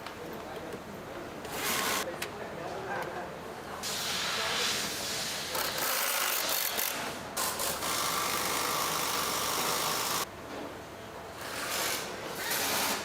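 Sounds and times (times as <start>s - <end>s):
power tool running: 7.7s - 10.3s.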